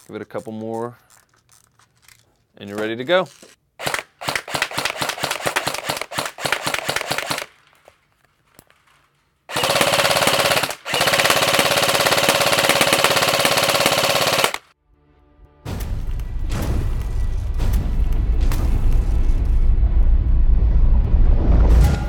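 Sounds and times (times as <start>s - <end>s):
airsoft rifle firing bursts: 3.8s - 7.5s, 9.5s - 14.7s
sharp clicks: 9.5s - 14.7s.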